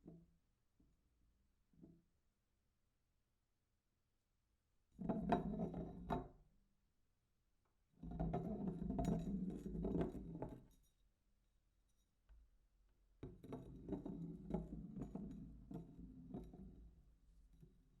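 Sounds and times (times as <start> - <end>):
glass bottle rolling: 8.3 - 10.4.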